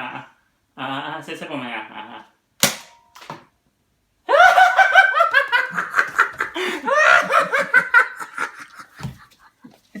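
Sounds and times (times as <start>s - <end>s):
hearty laughter: 4.3s - 9.8s.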